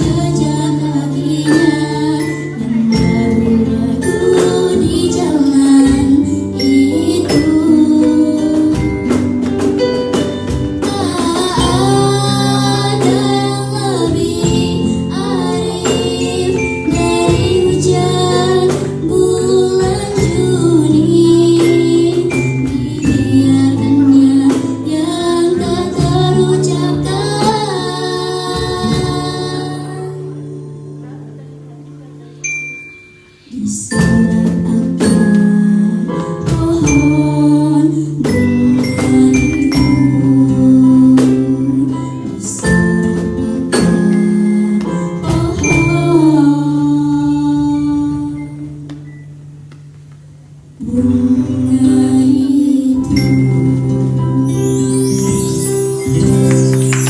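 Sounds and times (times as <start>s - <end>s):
woman singing: 0.0s - 9.8s, 10.4s - 31.8s, 33.5s - 49.0s, 50.8s - 55.6s
percussion strokes: 0.0s - 31.2s, 53.0s - 57.0s
sustained instrumental accompaniment: 0.0s - 57.0s
bell-like struck notes: 28.6s - 35.9s.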